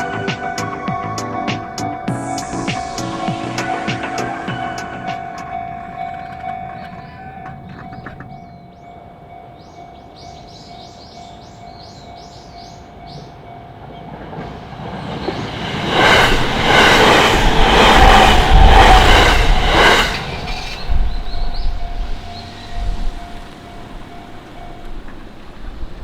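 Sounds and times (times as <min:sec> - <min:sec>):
steady tone: 0:00.0 - 0:08.3
train wheels clattering: 0:00.0 - 0:08.8, 0:13.9 - 0:26.0.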